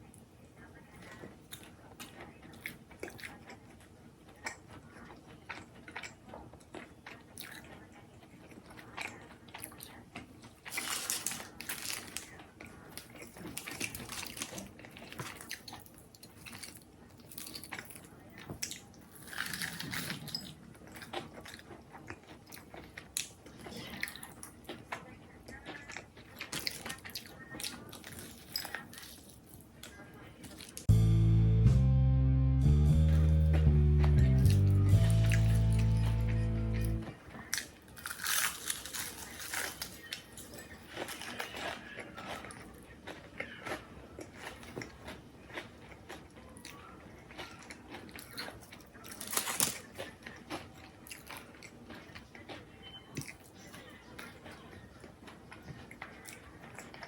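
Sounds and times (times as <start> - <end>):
crunchy chewing: 0.0 - 30.9, 33.2 - 57.0.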